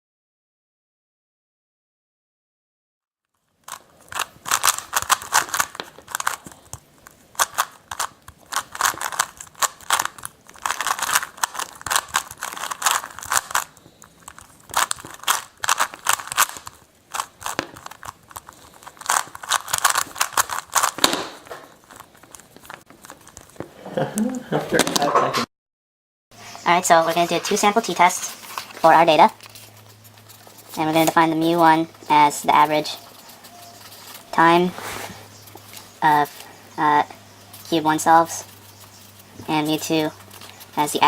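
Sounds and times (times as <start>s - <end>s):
rubik's cube clicking: 3.7s - 23.6s.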